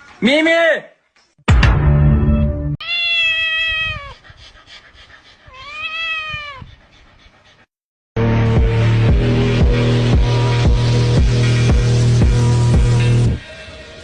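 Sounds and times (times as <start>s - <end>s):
music: 1.5s - 2.8s, 8.2s - 14.0s
cat meowing: 2.8s - 4.2s, 5.5s - 6.7s.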